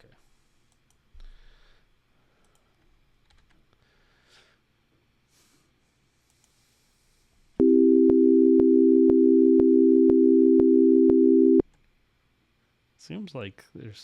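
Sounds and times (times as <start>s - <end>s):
steady low electronic tone: 7.6s - 11.6s.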